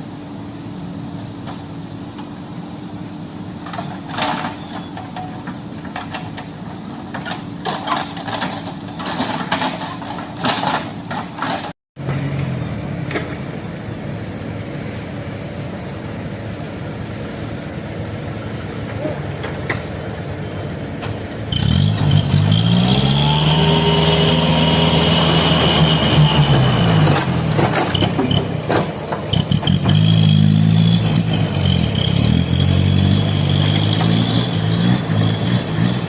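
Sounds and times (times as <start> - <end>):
diesel engine running: 0.0 - 36.0
metal clanks and scrapes: 3.6 - 12.2, 27.0 - 32.4.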